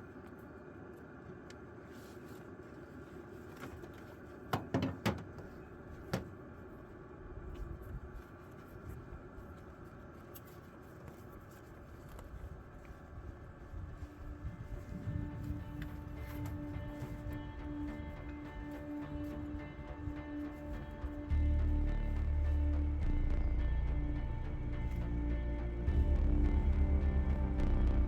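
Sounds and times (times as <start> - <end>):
low rumble: 13.8 - 28.0.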